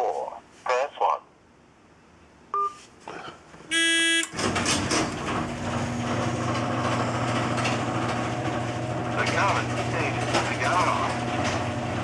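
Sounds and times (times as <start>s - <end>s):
short electronic beep: 3.7s - 4.3s
garage door opener motor hum: 3.8s - 12.0s.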